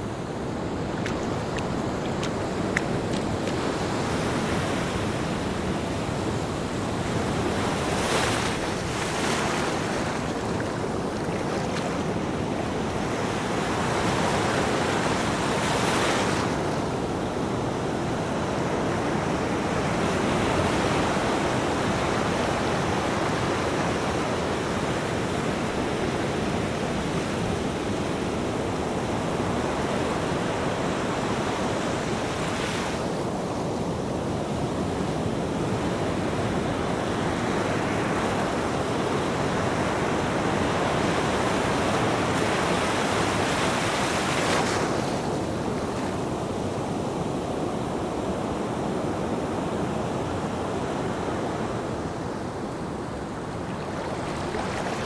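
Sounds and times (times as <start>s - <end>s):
waves breaking with a hiss: 0.0s - 17.8s
surf washing on a beach: 0.0s - 55.0s.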